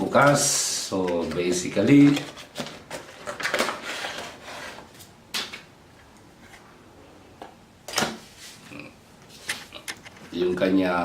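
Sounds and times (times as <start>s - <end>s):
packaging rustling: 1.0s - 5.0s.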